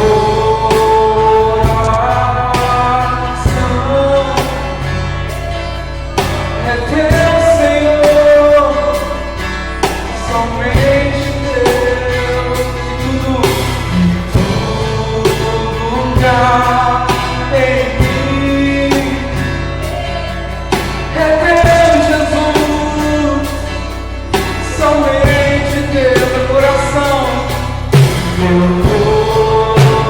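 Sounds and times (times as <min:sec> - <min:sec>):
acoustic guitar: 0:00.0 - 0:30.0
drum kit with cymbals: 0:00.0 - 0:30.0
person singing long notes: 0:24.6 - 0:30.0.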